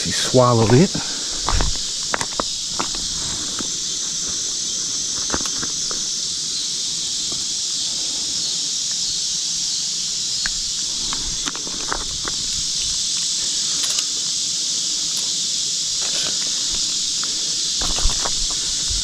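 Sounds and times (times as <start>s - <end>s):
insects buzzing: 0.0s - 19.0s
handling clicks and knocks: 0.6s - 4.4s.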